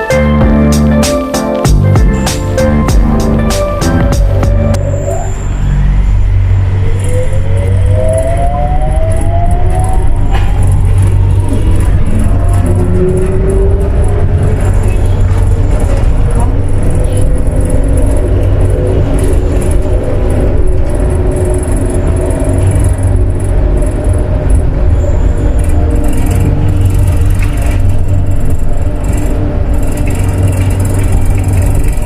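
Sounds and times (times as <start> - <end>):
metro train rumbling: 0.0 - 32.0.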